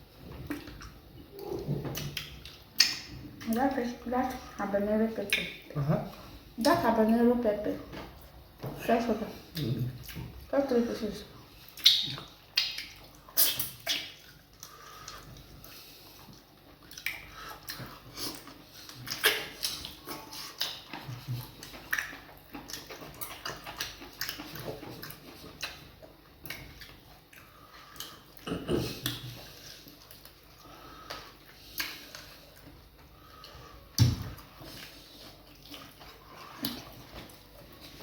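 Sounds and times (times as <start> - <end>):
wet mouth smacks and chewing: 0.4 - 3.5, 11.7 - 28.4, 29.0 - 32.8.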